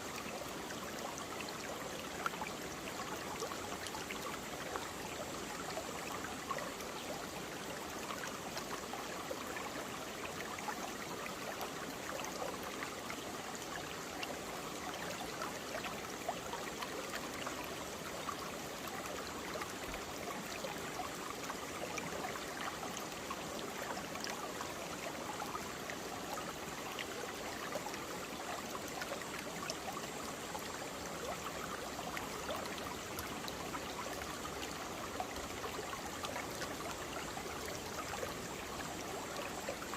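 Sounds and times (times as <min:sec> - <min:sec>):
stream flowing over rocks: 0:00.0 - 0:39.9.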